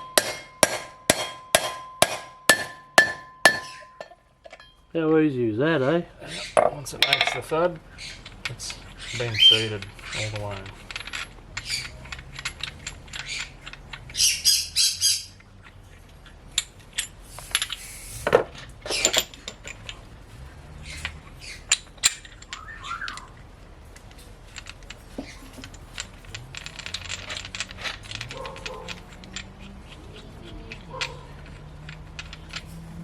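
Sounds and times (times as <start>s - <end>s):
sharp metallic taps: 0.0s - 4.8s.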